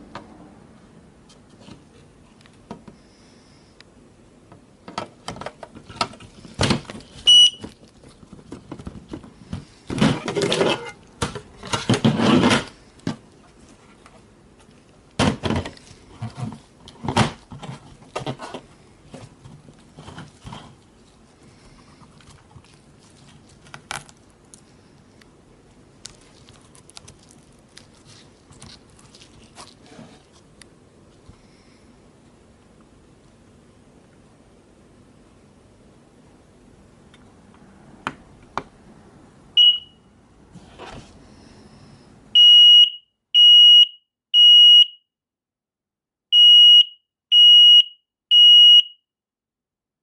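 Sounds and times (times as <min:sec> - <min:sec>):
packaging rustling: 0:26.0 - 0:30.4.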